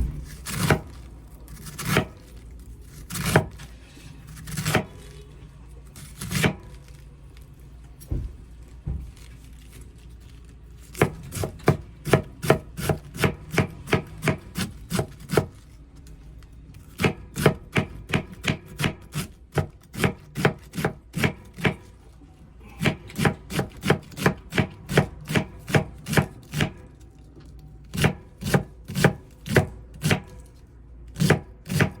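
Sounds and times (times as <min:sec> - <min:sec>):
knife chopping cabbage on board: 0:00.0 - 0:03.7, 0:04.3 - 0:05.1, 0:06.0 - 0:06.8, 0:10.8 - 0:15.6, 0:16.8 - 0:22.0, 0:22.8 - 0:27.0, 0:27.9 - 0:30.5, 0:31.2 - 0:32.0.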